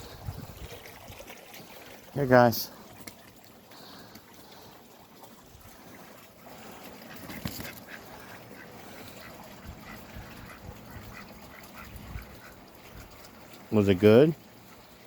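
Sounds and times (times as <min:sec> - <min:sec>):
duck bills pecking ticks: 0:07.1 - 0:12.7.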